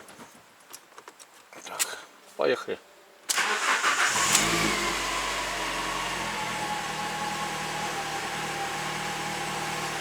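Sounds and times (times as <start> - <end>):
car engine starting and idling: 3.3 - 10.0.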